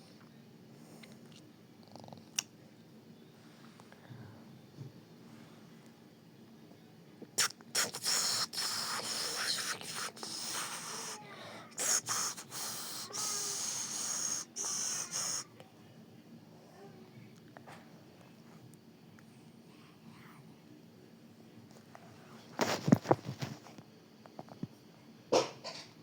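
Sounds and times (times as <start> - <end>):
mouth-made hissing spray sound: 7.4 - 15.6.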